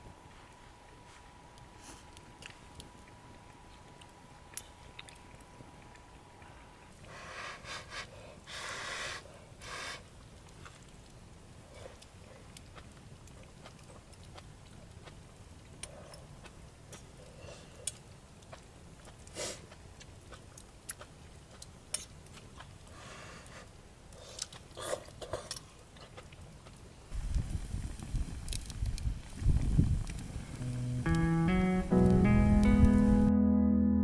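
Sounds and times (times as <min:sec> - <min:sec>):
low steady rumble: 0:27.1 - 0:34.0.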